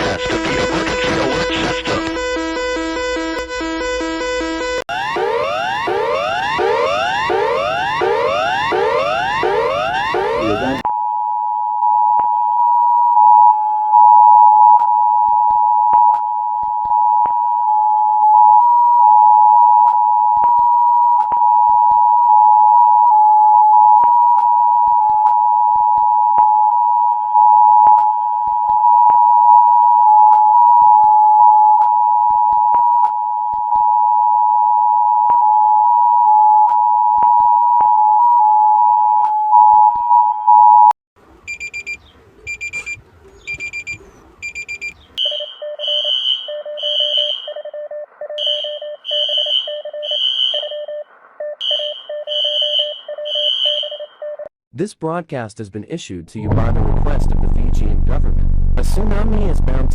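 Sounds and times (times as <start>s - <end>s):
rapid rising electronic sweeps: 0.0s - 10.8s.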